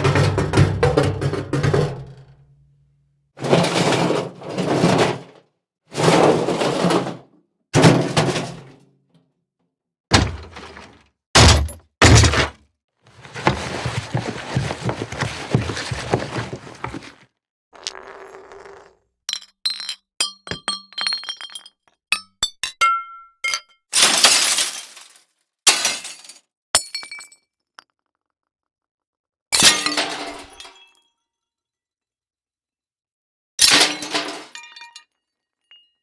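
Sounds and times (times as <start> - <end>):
crashing debris: 10.1 - 17.2
heavy thuds: 10.1 - 17.2.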